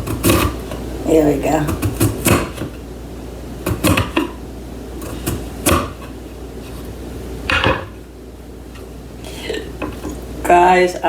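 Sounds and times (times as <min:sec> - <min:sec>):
dish scraping: 0:05.0 - 0:08.0.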